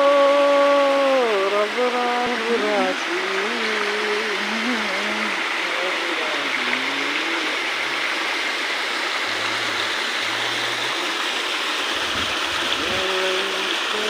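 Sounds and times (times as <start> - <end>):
faint voices: 0.0 - 7.8
waterfall rushing: 0.0 - 14.0.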